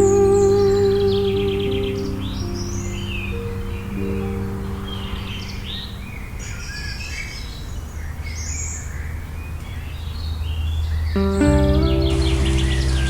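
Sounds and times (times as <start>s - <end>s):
sustained music notes: 0.0s - 6.2s, 11.2s - 13.0s
low musical drone: 0.0s - 6.4s, 11.2s - 13.0s.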